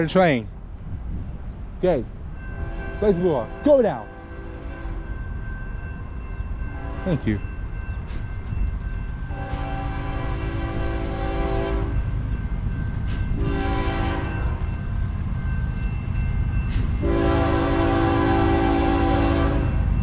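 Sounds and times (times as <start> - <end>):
train rumbling by: 0.0 - 20.0
locomotive air horn: 2.5 - 5.1, 6.7 - 7.2, 9.3 - 12.0, 13.1 - 14.6, 16.7 - 19.8.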